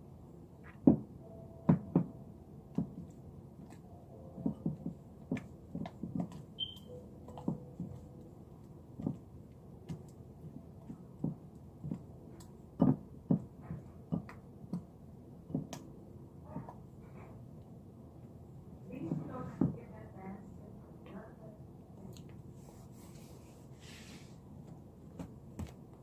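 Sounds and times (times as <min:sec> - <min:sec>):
slime clicking and knocking: 0:04.4 - 0:08.0.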